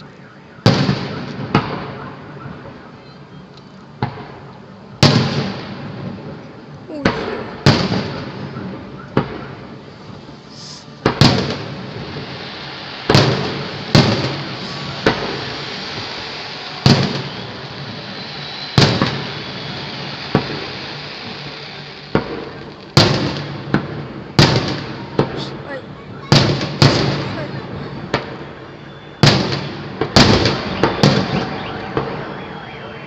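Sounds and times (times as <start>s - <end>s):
fireworks bursting with bangs: 0.6s - 3.0s, 3.9s - 33.0s.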